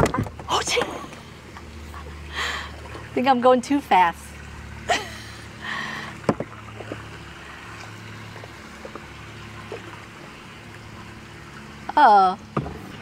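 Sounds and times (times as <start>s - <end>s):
paddle splashing water: 0.0s - 11.9s
steady low hum: 0.0s - 13.0s
paddle knocking on kayak hull: 6.2s - 7.0s.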